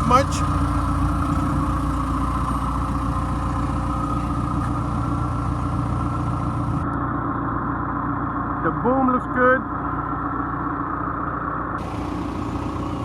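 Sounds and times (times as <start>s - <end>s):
diesel engine idling: 0.0s - 7.0s, 9.6s - 13.0s.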